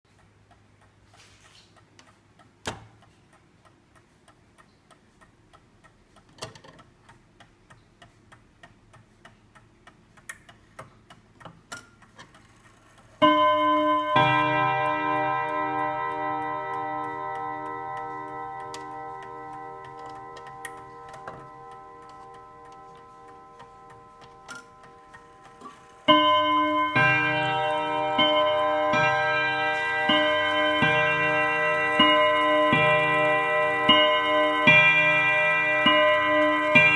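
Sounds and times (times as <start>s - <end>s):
clock ticking softly: 0.1s - 36.9s
clock striking ringing strokes: 13.2s - 36.9s.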